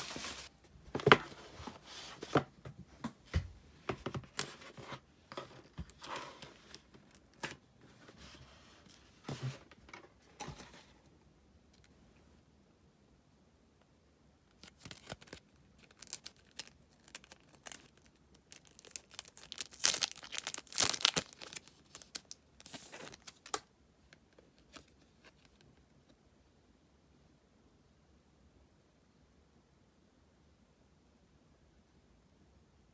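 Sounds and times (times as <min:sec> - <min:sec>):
packaging tearing and crinkling: 0:14.6 - 0:23.6.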